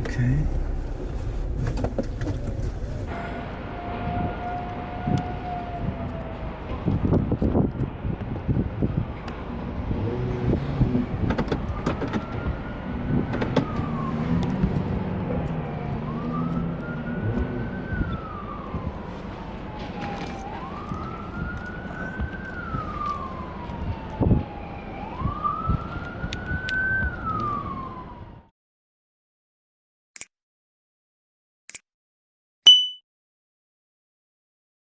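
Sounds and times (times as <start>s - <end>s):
steady rumble: 0.0s - 3.6s.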